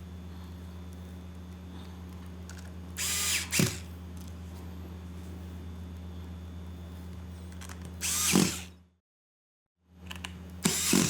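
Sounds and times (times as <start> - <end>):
electric screwdriver humming: 3.0 - 3.9, 8.0 - 8.7, 10.6 - 11.0.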